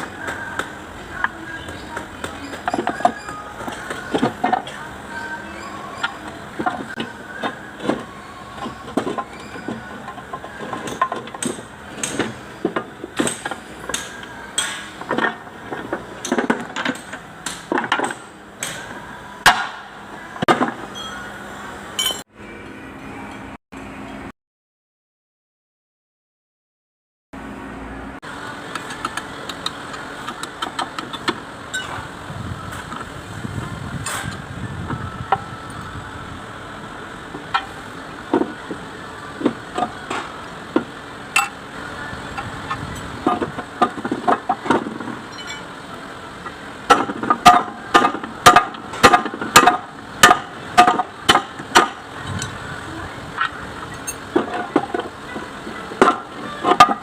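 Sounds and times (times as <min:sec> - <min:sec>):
steady background noise: 0:00.0 - 0:24.3, 0:27.4 - 0:57.0.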